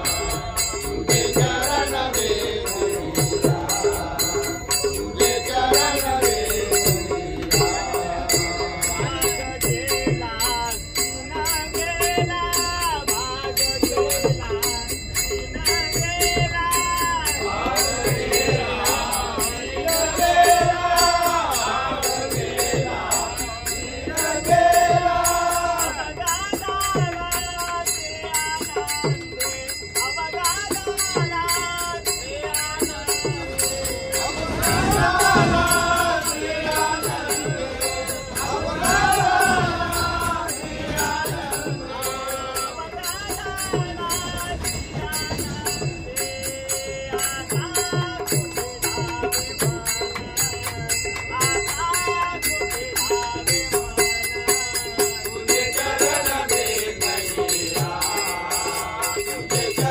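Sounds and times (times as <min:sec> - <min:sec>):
hand cymbals clinking: 0:00.0 - 0:59.9
person singing devotional song: 0:00.0 - 0:59.9.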